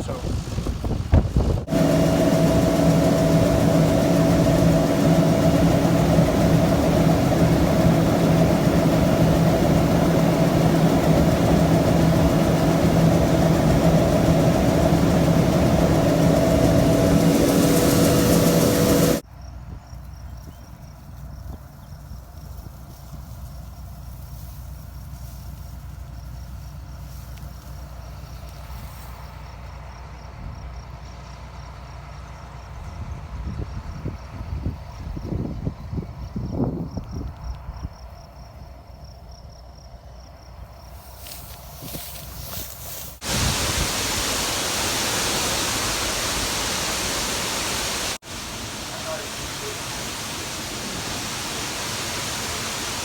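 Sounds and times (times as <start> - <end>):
engine rumbling: 0.0 - 19.7, 40.5 - 53.0
wind: 0.0 - 53.0
insects chirping: 1.7 - 24.3, 24.9 - 28.4, 36.2 - 53.0
heavy rain: 9.9 - 19.2, 43.2 - 53.0
faint cricket chirping: 18.7 - 32.8, 36.1 - 43.1.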